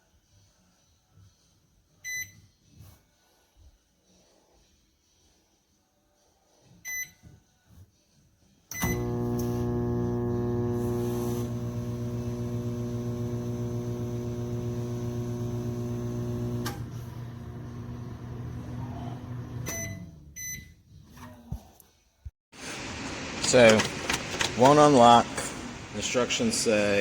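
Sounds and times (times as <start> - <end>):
microwave oven humming: 8.7 - 20.2
microwave click: 8.8 - 18.6.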